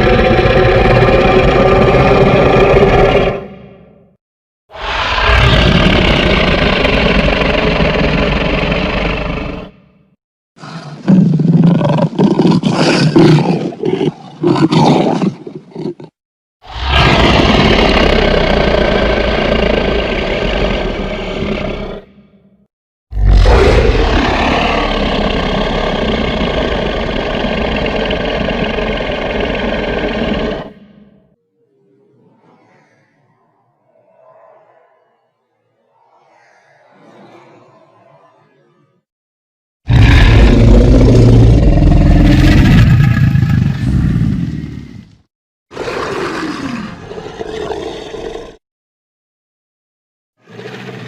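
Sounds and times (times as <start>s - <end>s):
monster roar: 0.0s - 4.0s, 4.7s - 9.8s, 16.7s - 22.4s, 23.1s - 31.2s, 39.9s - 45.1s, 45.7s - 48.6s.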